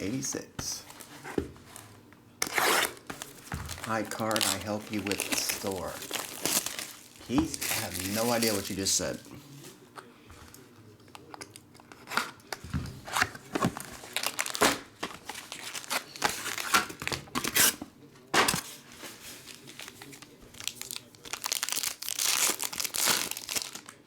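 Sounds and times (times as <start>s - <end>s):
card packs tearing open: 2.4s - 9.1s, 11.9s - 17.8s, 18.4s - 24.0s
wrappers crinkling: 3.0s - 9.2s, 13.8s - 17.7s, 18.8s - 24.0s.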